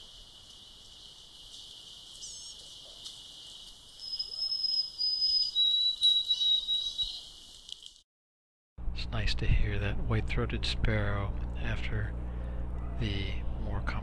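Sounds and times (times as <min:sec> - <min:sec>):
sparrow whistled song: 0:02.2 - 0:07.5.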